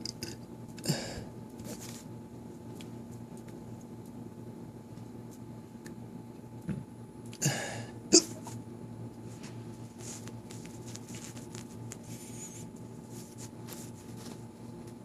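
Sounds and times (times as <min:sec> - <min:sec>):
man hiccuping: 0:07.4 - 0:08.5.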